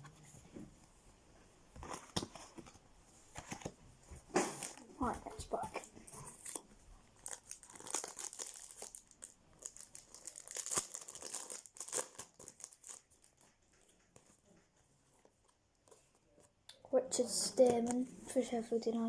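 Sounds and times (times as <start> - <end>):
wrapper being torn and crinkled: 7.2 - 13.4.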